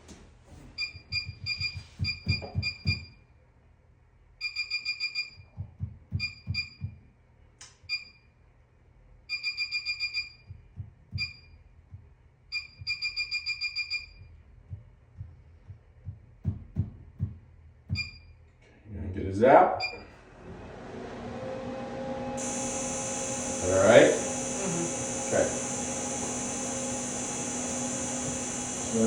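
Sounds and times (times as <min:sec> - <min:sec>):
electronic control panel beeps: 0:00.8 - 0:03.1, 0:04.4 - 0:05.4, 0:09.3 - 0:10.5, 0:12.5 - 0:14.2, 0:17.9 - 0:18.3
soft low thumps: 0:05.5 - 0:07.0, 0:10.5 - 0:13.0, 0:14.2 - 0:18.2.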